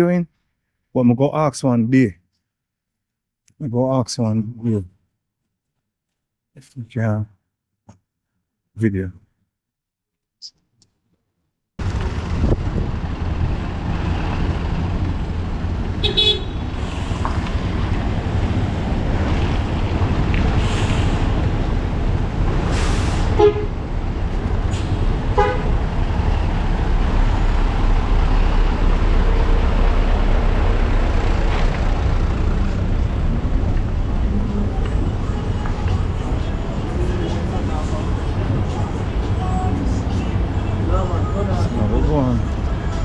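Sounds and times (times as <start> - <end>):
street traffic rumble: 11.8 - 43.0
vehicle horn toots: 16.0 - 16.7, 23.4 - 23.7, 25.4 - 25.8.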